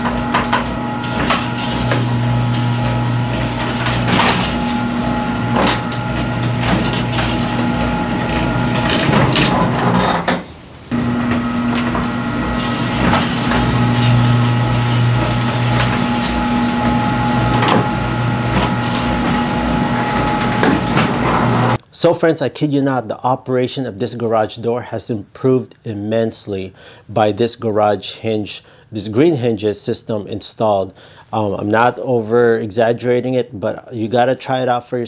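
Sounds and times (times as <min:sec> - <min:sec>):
garage door opener motor humming: 0:00.0 - 0:21.8
rollers and hinges clicking: 0:00.0 - 0:21.8.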